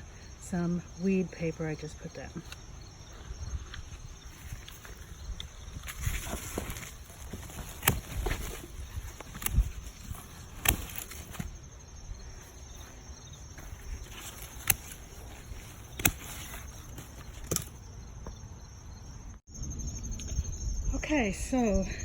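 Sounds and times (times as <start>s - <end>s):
insects chirping: 0.0s - 22.0s
pruners snipping stems: 4.5s - 11.6s, 12.4s - 17.9s.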